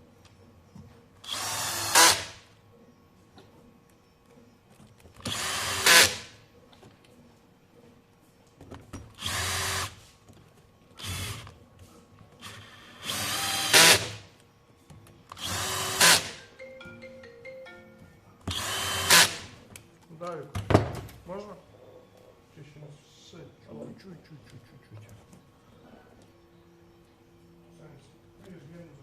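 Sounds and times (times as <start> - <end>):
electric screwdriver driving screws: 1.3 - 2.4, 5.2 - 6.3, 9.2 - 10.0, 12.4 - 14.2, 15.4 - 16.4, 18.5 - 19.5.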